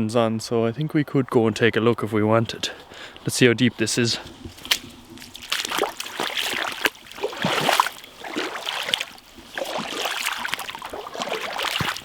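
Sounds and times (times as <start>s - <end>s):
boots sloshing through shallow water: 2.8s - 12.0s.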